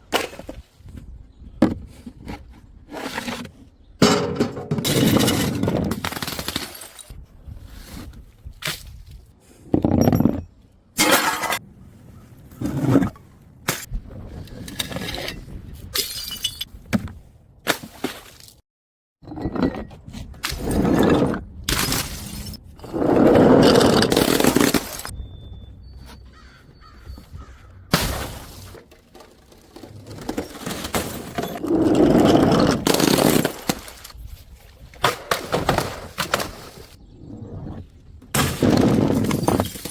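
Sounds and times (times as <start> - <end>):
glass bottles smashing: 4.0 - 7.1, 16.0 - 16.7, 30.1 - 33.9, 38.4 - 39.9
something being crushed: 27.9 - 34.2.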